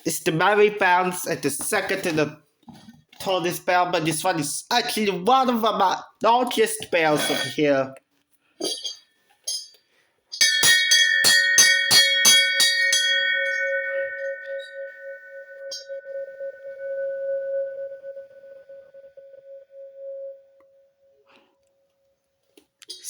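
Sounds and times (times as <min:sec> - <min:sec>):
large bell ringing: 0:10.4 - 0:20.6.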